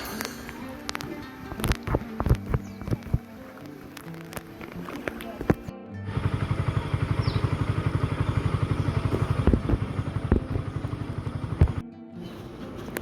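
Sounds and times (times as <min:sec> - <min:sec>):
small engine fast throb: 0:06.1 - 0:11.8.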